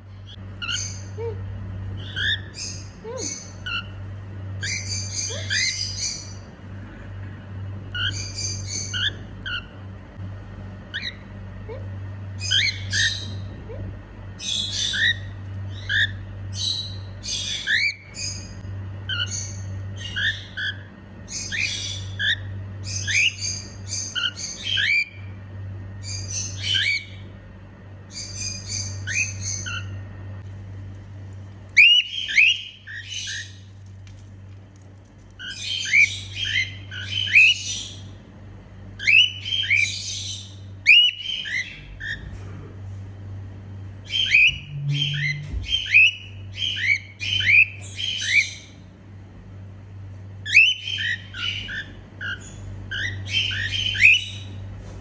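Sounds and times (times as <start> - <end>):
steady low hum: 0.0 - 55.0
cockatiel calling: 2.0 - 3.9, 4.6 - 6.5, 7.9 - 9.7, 10.9 - 11.3, 12.4 - 13.4, 14.4 - 25.2, 26.0 - 27.2, 28.1 - 29.9, 31.7 - 33.7, 35.4 - 38.0, 39.0 - 42.3, 44.0 - 48.7, 50.4 - 54.5.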